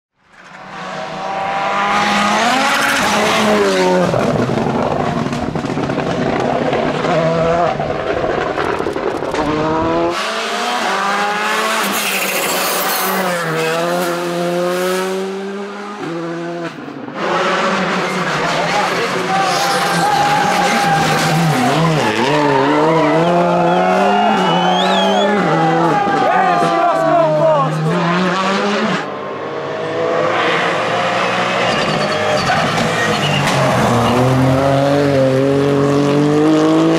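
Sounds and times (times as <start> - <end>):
rally car engines revving: 0.3 - 36.9.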